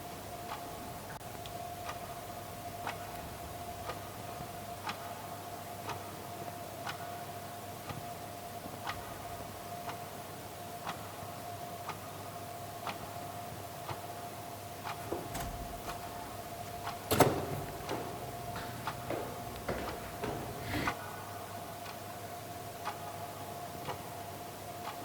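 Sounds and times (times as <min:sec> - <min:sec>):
steady hum: 0:14.2 - 0:21.2
clock ticking: 0:14.7 - 0:21.0.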